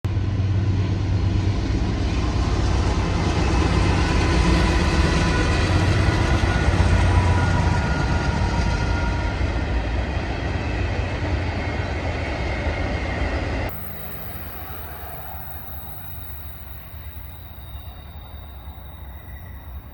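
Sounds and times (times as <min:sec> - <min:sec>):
train rumbling by: 0:00.3 - 0:19.9
faint high tones: 0:13.7 - 0:19.9.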